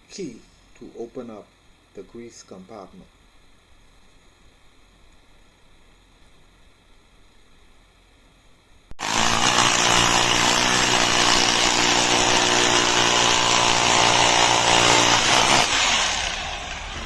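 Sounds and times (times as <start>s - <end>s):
rotary hammer drill motor: 9.0s - 17.0s.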